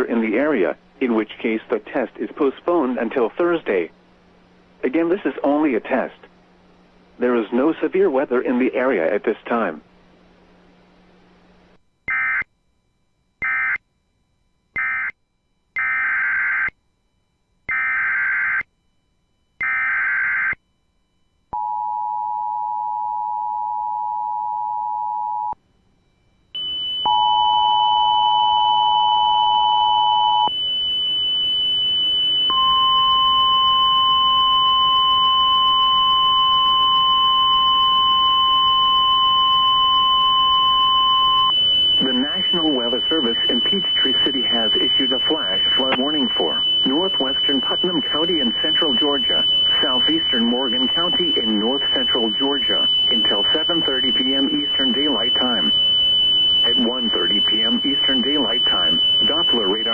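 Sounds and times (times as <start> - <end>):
steady high alarm tone: 12.0 - 59.9.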